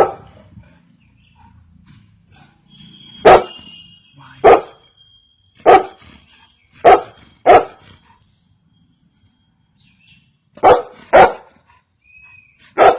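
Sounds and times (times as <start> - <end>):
dog barking: 0.0 - 0.4, 3.2 - 3.7, 4.4 - 4.8, 5.6 - 6.0, 6.8 - 7.8, 10.6 - 11.6.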